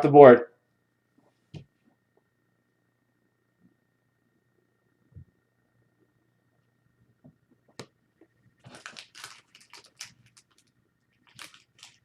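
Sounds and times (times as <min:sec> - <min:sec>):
small objects rustling: 0:08.6 - 0:12.0.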